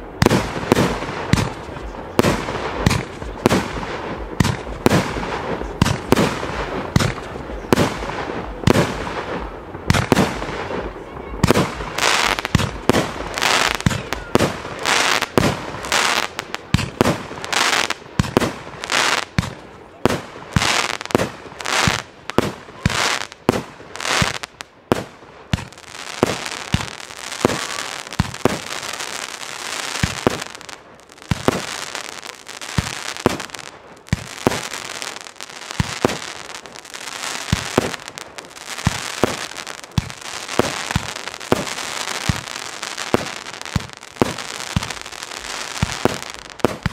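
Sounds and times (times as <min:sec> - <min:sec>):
firework bangs: 0:00.0 - 0:46.9
firework crackling hiss: 0:11.4 - 0:46.9.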